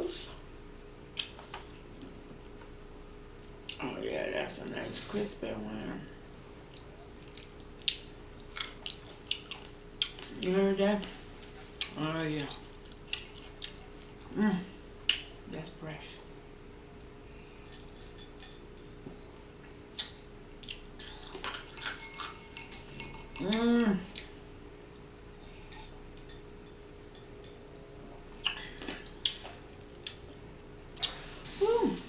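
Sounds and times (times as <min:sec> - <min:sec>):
person humming: 0:23.4 - 0:24.2, 0:31.5 - 0:32.0.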